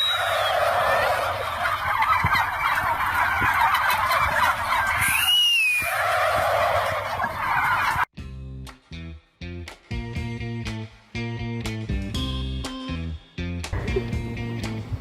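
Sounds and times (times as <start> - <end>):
high rising and falling bird call: 0.0 - 8.1
poultry flock chattering: 0.0 - 8.1.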